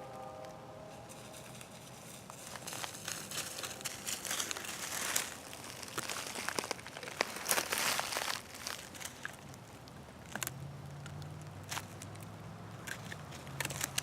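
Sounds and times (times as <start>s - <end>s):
footsteps crunching through dry leaves: 0.1s - 9.7s.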